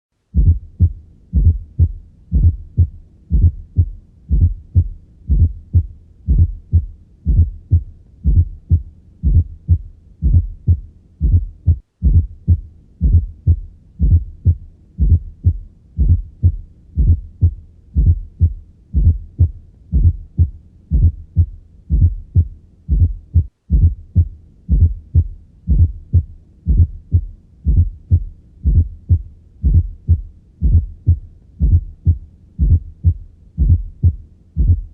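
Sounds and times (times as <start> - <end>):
heartbeat thumps: 0.3 - 34.9.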